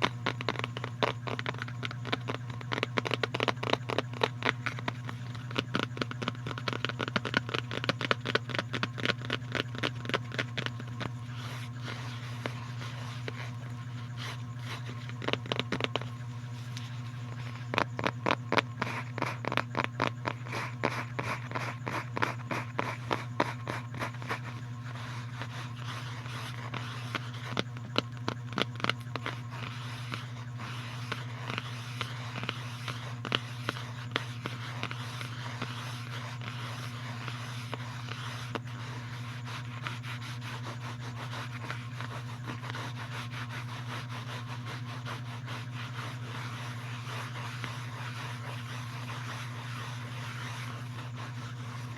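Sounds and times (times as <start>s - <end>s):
quick sharp taps: 0.0s - 13.5s
constant low hum: 0.0s - 51.9s
steady scratching: 0.0s - 51.9s.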